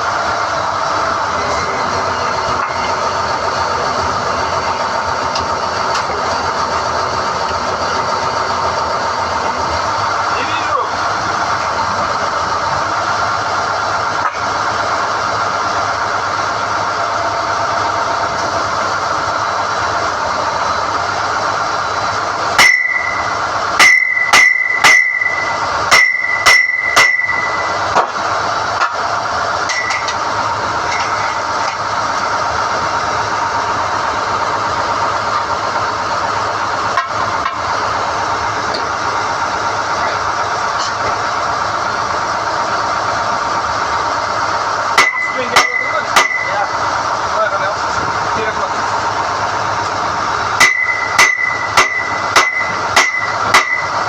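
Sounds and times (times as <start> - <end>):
drilling rig running: 0.0 - 54.0
ringing metal-on-metal strikes: 22.6 - 27.7, 29.7 - 30.2, 45.0 - 46.6, 50.6 - 54.0.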